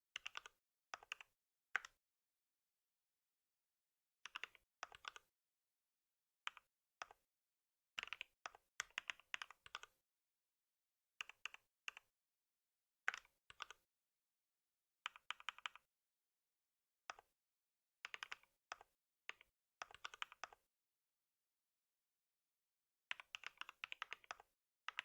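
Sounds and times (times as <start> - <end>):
typing on computer keyboard: 0.2 - 2.0, 23.2 - 25.0.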